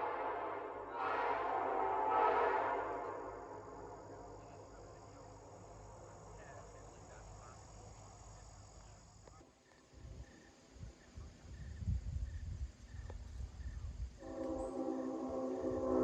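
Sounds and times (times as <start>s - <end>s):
air horn echo: 0.0s - 5.0s, 14.2s - 16.0s
insect trill: 2.7s - 16.0s
low wind rumbles: 9.9s - 16.0s.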